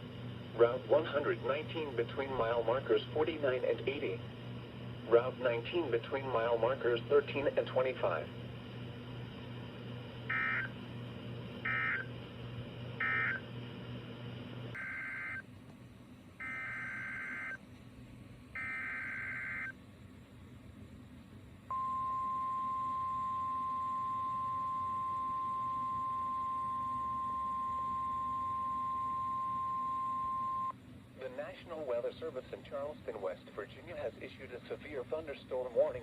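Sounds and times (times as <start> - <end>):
data bursts: 11.7 - 12.1.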